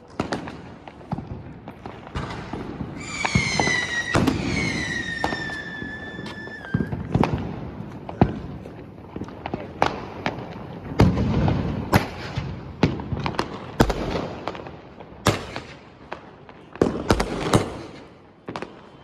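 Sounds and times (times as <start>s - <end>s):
whistling firework: 0.0s - 8.8s, 15.2s - 19.0s
firecrackers cracking and popping: 0.0s - 19.0s.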